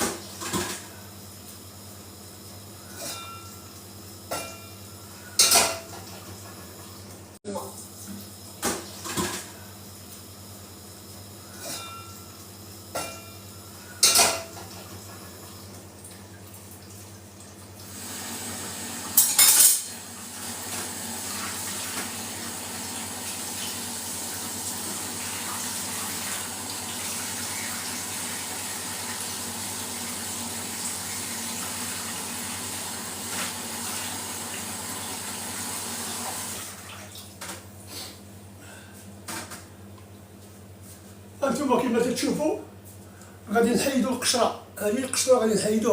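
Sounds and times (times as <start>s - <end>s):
utensils clinking in a sink: 4.3s - 6.2s, 13.0s - 14.8s, 19.1s - 20.0s
tap water running into sink: 14.3s - 37.6s
loud utensil clatter: 19.2s - 20.0s.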